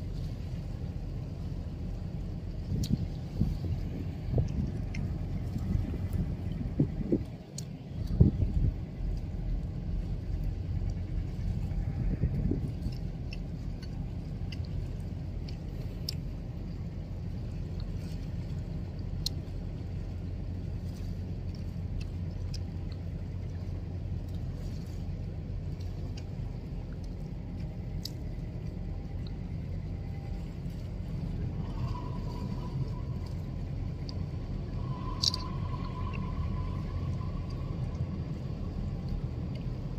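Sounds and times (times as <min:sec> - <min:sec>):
ship engines rumbling: 0:00.0 - 0:39.9
steady high tone: 0:31.4 - 0:38.2
faint clicks: 0:34.9 - 0:36.3.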